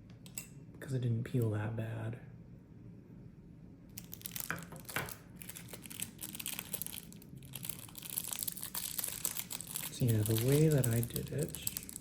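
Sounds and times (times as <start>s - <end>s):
adhesive tape peeling and crinkling: 4.0s - 12.0s.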